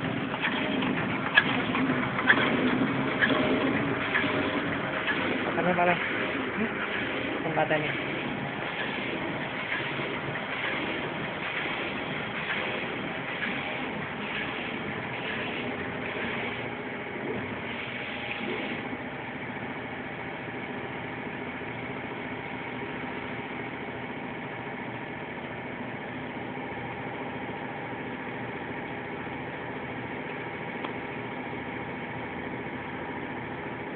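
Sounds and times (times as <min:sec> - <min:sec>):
machine mechanical hum: 0:00.0 - 0:33.9.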